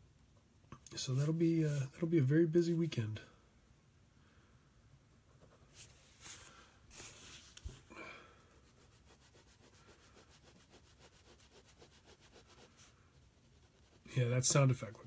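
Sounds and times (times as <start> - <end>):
pen scratching on paper: 8.7 - 14.1.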